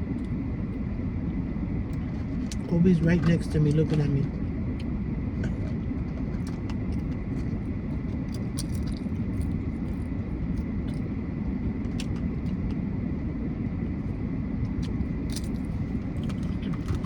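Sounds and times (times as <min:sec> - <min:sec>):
car cabin rumble: 0:05.3 - 0:11.1, 0:14.7 - 0:17.0.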